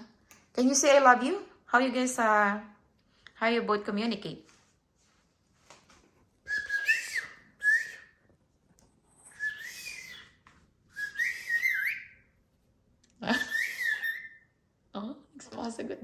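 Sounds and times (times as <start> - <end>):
parrot whistling: 6.5 - 8.2, 9.2 - 12.3, 13.3 - 14.6
person whistling: 6.5 - 8.2, 9.2 - 12.2, 13.3 - 14.4.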